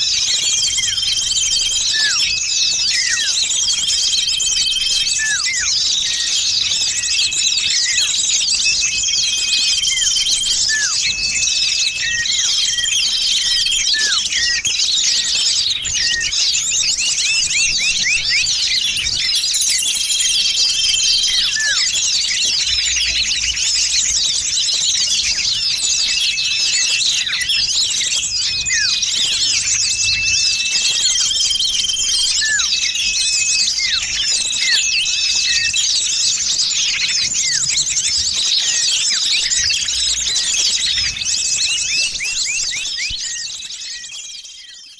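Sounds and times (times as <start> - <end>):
small songbirds twittering: 0.0 - 44.9.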